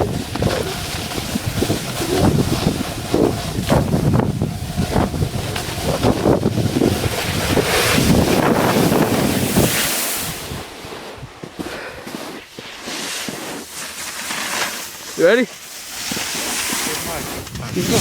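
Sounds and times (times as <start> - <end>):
wind buffeting microphone: 0.0 - 11.4, 16.8 - 18.0.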